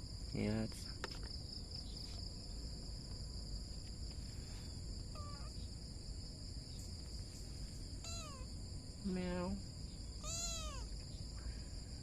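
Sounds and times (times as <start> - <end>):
crickets chirring: 0.0 - 12.0
kitten meow: 5.1 - 5.6, 8.0 - 8.5, 10.2 - 11.0.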